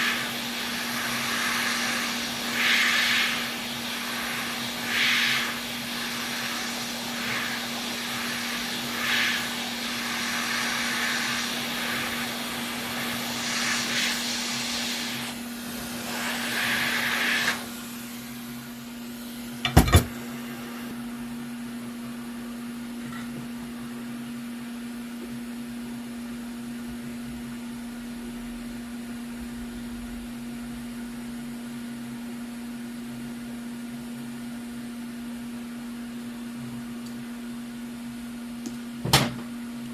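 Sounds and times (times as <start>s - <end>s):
air rushing in surges: 0.0s - 19.5s.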